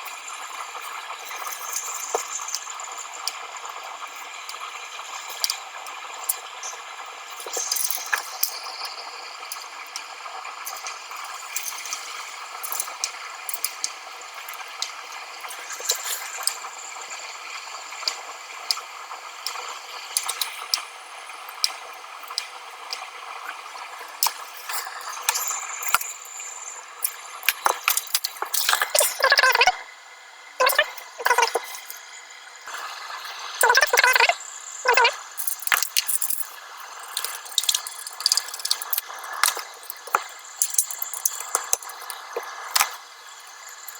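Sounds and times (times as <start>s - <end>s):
steady hiss: 0.0s - 29.3s, 29.9s - 43.9s
small metal clicks and rattles: 0.8s - 16.7s, 19.4s - 20.9s, 23.8s - 26.3s, 27.0s - 29.7s, 34.9s - 43.9s.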